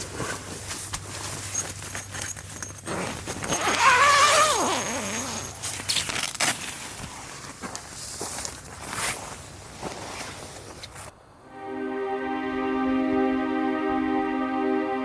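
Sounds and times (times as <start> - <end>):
rustling: 0.0 - 11.1.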